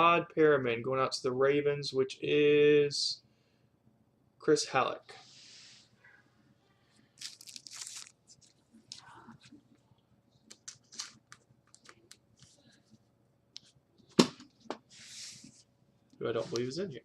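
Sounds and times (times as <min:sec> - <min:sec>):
card sleeves rustling and clicking: 0:07.2 - 0:09.0, 0:10.4 - 0:12.7.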